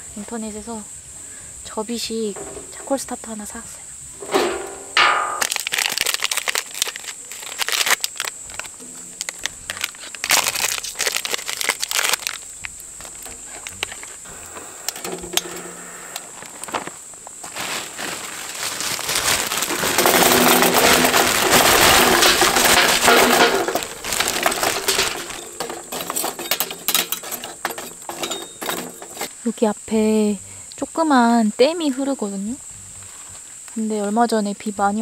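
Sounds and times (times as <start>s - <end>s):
crunching and rustling: 2.2s - 3.2s, 4.2s - 29.4s
metal starter clicks and clinks: 14.9s - 16.4s, 19.7s - 29.3s.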